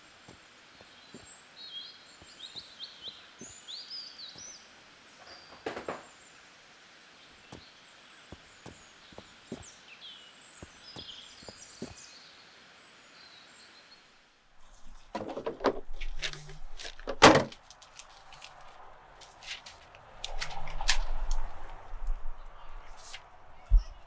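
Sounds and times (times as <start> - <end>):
faint birds chirping: 0.0 - 24.0
handling clicks and knocks: 5.2 - 6.1, 14.6 - 18.8.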